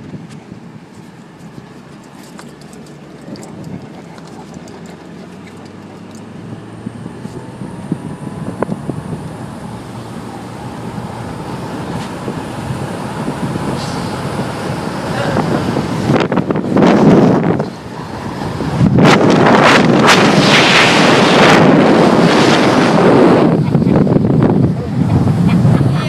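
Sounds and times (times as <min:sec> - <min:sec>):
car road and wind noise: 0:00.0 - 0:26.0
wind buffeting microphone: 0:00.0 - 0:26.0.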